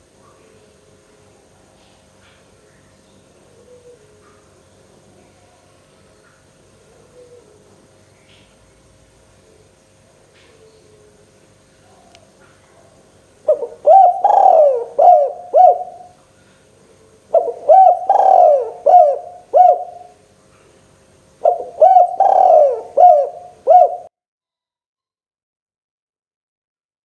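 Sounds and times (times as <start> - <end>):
dove cooing: 3.4 - 4.5, 6.8 - 7.9, 10.4 - 16.2, 16.9 - 20.2, 21.4 - 24.1.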